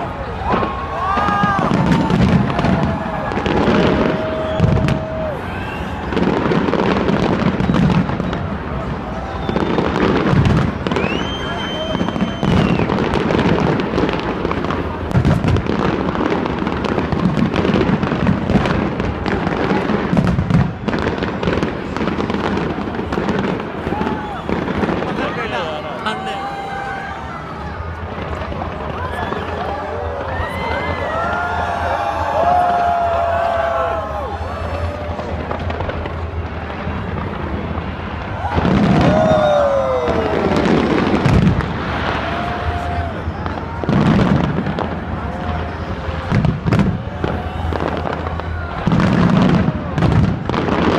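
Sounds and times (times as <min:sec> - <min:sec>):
fireworks bangs and crackles: 0:00.0 - 0:50.9
long falling whistle tone: 0:03.9 - 0:06.2, 0:09.2 - 0:10.0, 0:10.9 - 0:13.0.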